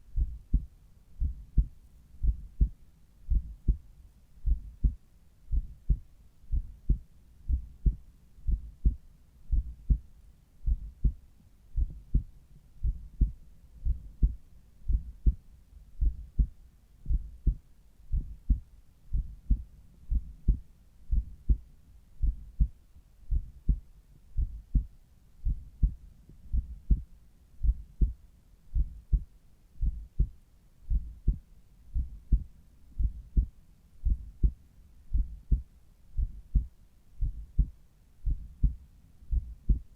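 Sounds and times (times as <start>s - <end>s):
heartbeat lub-dub: 0.0s - 23.8s, 24.4s - 39.9s.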